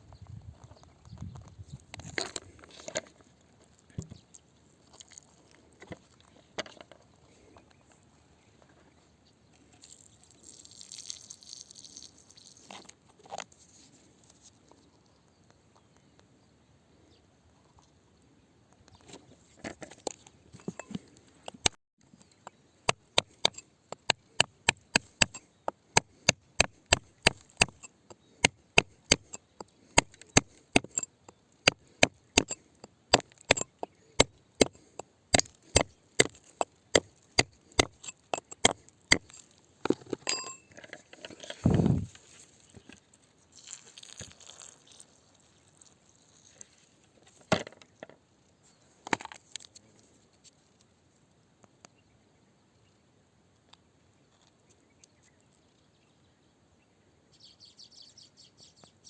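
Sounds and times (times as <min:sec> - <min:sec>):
metal tool striking rock: 0:20.6 - 0:21.8, 0:22.4 - 0:40.9.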